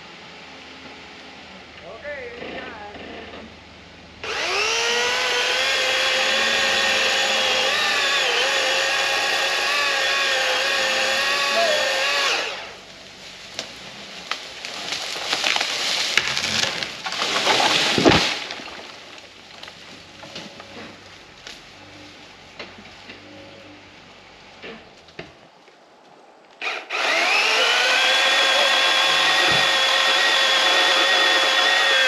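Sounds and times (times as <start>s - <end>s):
electric chainsaw whining: 4.2s - 12.8s, 26.6s - 32.0s
tree crashing down: 13.4s - 21.2s, 27.0s - 32.0s
wood cracking and snapping: 13.5s - 20.7s.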